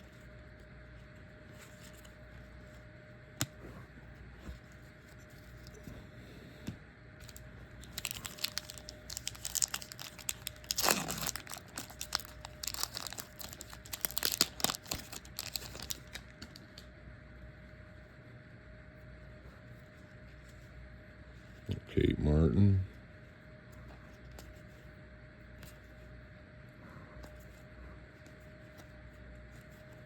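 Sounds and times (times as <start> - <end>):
wrapper tearing and crinkling: 7.2 - 16.8.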